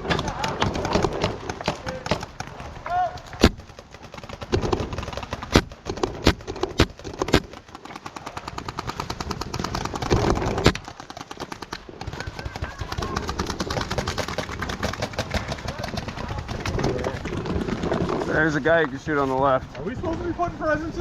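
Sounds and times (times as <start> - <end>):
loud single paintball shots: 0.0 - 7.6
paintball markers firing: 0.0 - 18.9.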